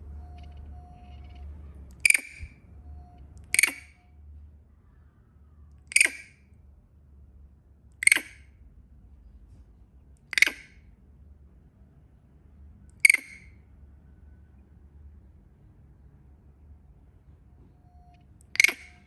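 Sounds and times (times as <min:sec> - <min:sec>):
monkey shrieking: 0:02.0 - 0:02.5, 0:03.5 - 0:04.0, 0:05.9 - 0:06.3, 0:08.0 - 0:08.4, 0:10.3 - 0:10.8, 0:13.0 - 0:13.4, 0:18.6 - 0:19.0.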